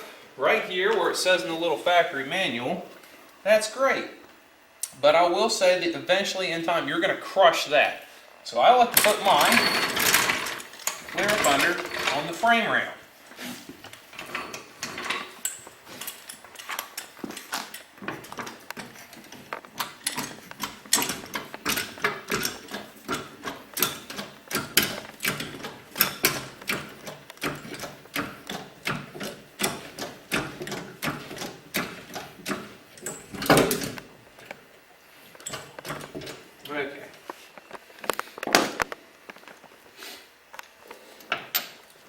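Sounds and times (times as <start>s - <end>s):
floor jack clicking and clanking: 8.9s - 12.7s, 13.5s - 34.6s, 35.4s - 36.5s.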